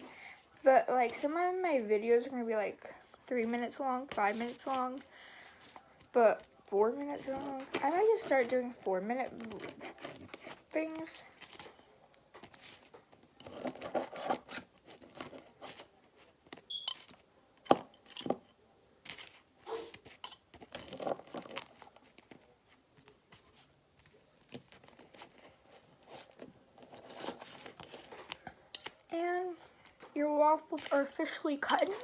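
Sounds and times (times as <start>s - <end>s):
scraping and crunching: 5.6s - 18.4s, 19.0s - 22.6s, 24.3s - 29.1s.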